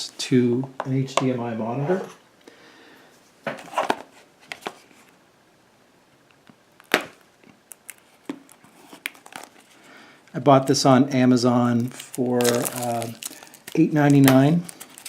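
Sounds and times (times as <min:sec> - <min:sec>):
packaging clicks and rustles: 0:07.7 - 0:09.8, 0:11.8 - 0:15.0.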